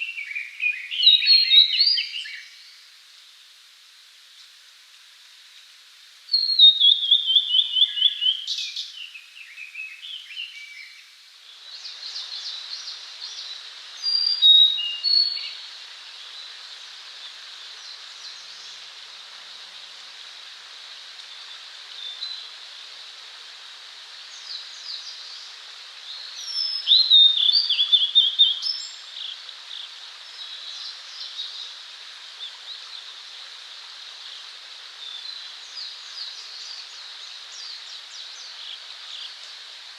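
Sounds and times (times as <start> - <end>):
bird whistling song: 0.0 - 2.6, 6.3 - 10.9, 14.0 - 15.6, 26.4 - 29.0
steady outdoor hiss: 0.0 - 39.9.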